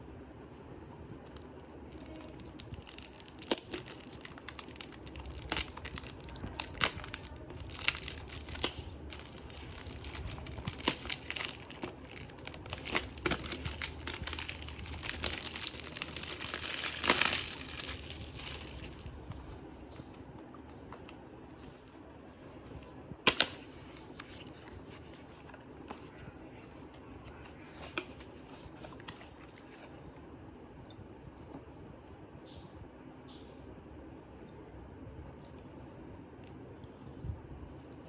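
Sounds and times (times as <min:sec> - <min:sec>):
wrapping crinkling and tearing: 0:01.0 - 0:19.8.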